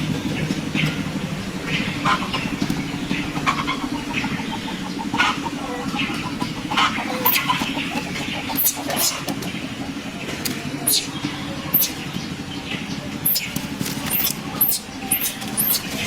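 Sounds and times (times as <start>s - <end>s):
chicken clucks: 1.7s - 12.0s
motor running: 13.2s - 16.0s.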